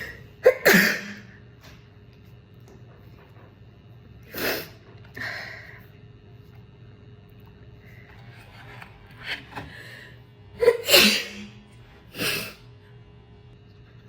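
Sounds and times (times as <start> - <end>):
person sneezing: 0.0 - 1.4, 10.6 - 12.6.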